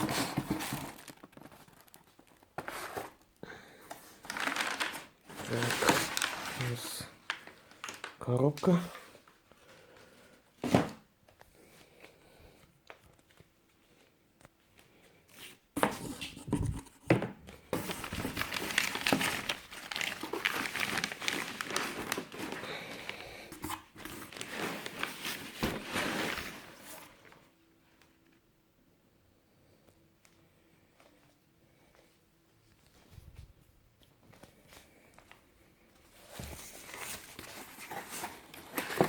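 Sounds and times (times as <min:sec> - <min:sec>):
packaging crinkling and rustling: 0:00.0 - 0:11.5, 0:17.5 - 0:27.5, 0:34.2 - 0:39.0.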